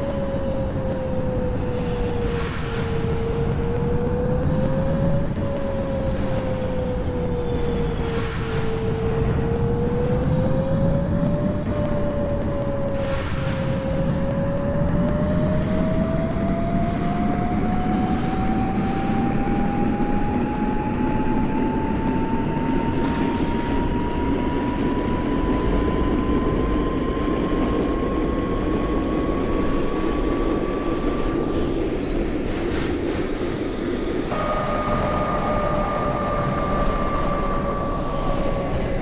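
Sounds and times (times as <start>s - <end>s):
high whine: 0.0s - 39.0s
vehicle rumbling: 0.0s - 39.0s
low tone: 34.2s - 39.0s.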